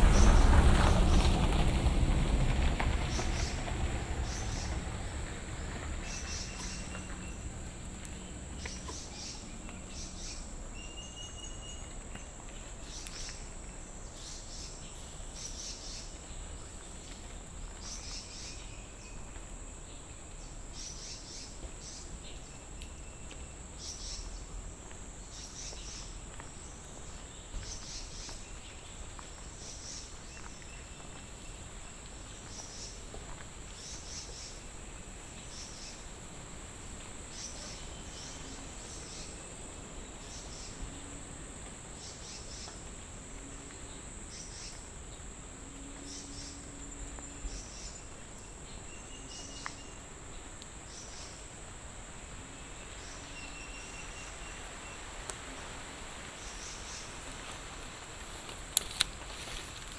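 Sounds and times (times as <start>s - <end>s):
low background rumble: 0.0s - 11.1s
insects trilling: 0.0s - 11.8s, 23.0s - 59.9s
bird calls: 2.4s - 12.0s.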